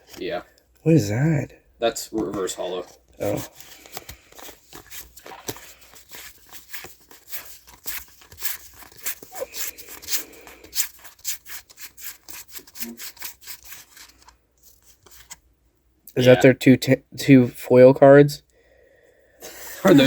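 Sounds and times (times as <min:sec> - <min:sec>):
cards rubbing clicks: 0:03.2 - 0:15.4.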